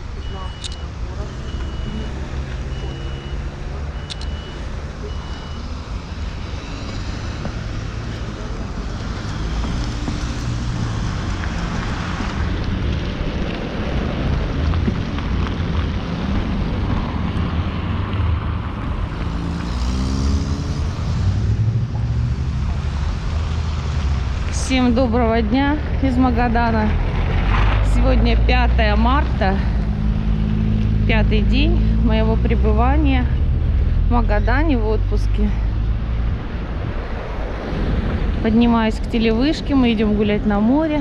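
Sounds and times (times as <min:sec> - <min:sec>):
cars and trucks passing: 0:00.0 - 0:41.0
short electronic beep: 0:00.2 - 0:05.7.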